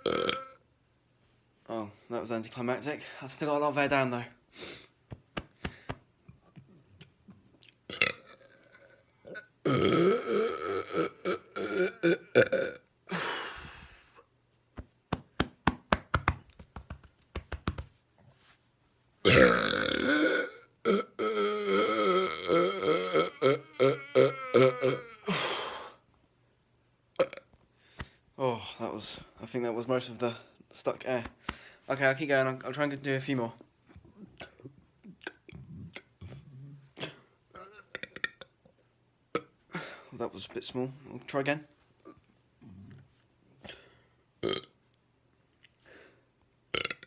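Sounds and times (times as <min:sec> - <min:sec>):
man burping: 0:00.0 - 0:00.6, 0:07.9 - 0:13.4, 0:19.2 - 0:25.8, 0:37.0 - 0:38.4, 0:44.4 - 0:44.7, 0:46.7 - 0:47.0.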